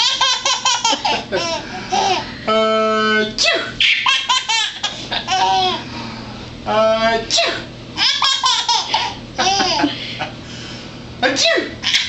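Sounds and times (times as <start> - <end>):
baby laughing: 0.0 - 2.2, 3.8 - 5.8, 8.0 - 10.0.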